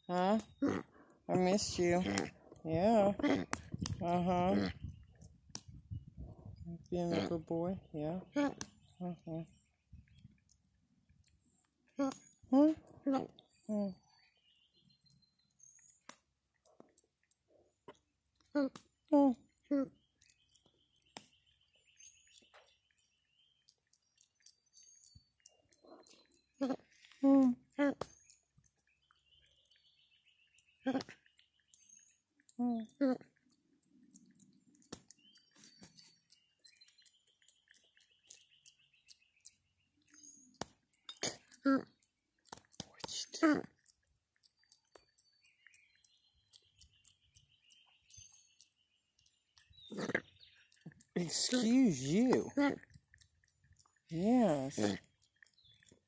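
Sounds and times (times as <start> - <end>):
faint grooming clicks: 0.0 - 56.0
monkey burping: 0.4 - 2.4, 3.0 - 5.0, 26.5 - 28.0, 30.8 - 31.3, 32.6 - 33.3, 41.1 - 42.0, 43.0 - 43.9, 49.8 - 53.0, 54.1 - 55.2.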